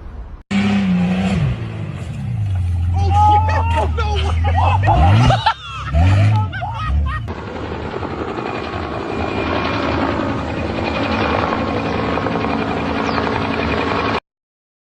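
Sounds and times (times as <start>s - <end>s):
motor running with fast flutter: 7.3s - 14.2s.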